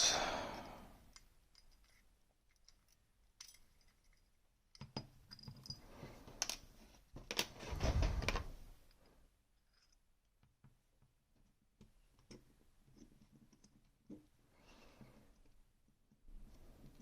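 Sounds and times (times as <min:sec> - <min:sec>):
handling and sliding noise: 0:05.7 - 0:08.9.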